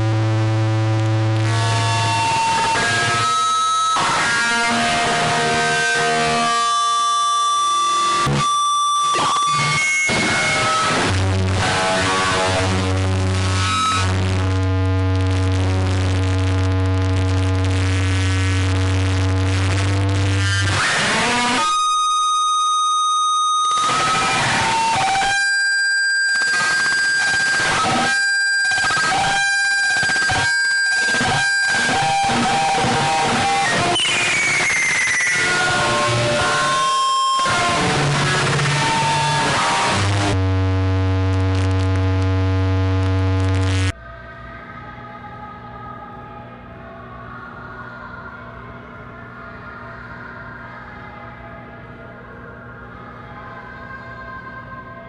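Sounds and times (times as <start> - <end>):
discordant electronic music: 23.7 - 44.0.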